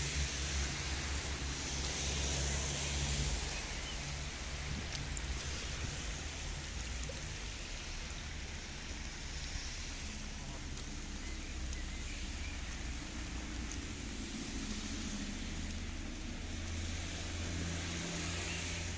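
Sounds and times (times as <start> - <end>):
heavy rain hissing: 0.0 - 18.9
raindrop ticks: 0.1 - 18.9.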